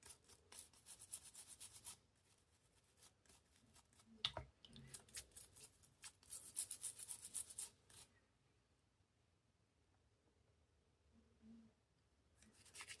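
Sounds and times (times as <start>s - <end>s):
scrubbing a pocket knife: 0.0s - 4.2s, 4.8s - 8.1s, 12.4s - 13.0s.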